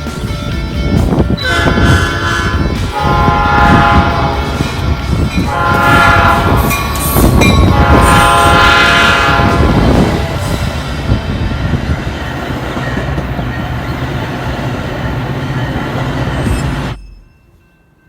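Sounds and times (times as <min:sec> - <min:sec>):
train rumble: 0:00.0 - 0:18.0
train horn blasts: 0:01.4 - 0:10.5.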